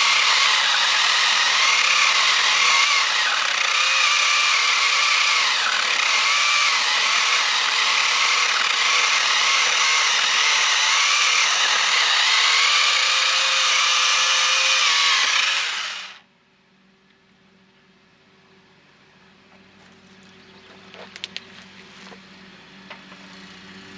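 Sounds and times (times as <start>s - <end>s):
electric chainsaw cutting wood: 0.0s - 16.2s.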